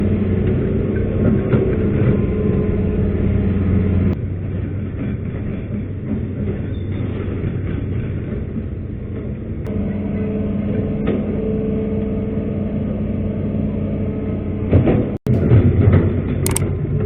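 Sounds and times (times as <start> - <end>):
excavator diesel engine humming: 0.0 - 17.0
machine clatter: 14.8 - 16.8
click: 16.4 - 16.6.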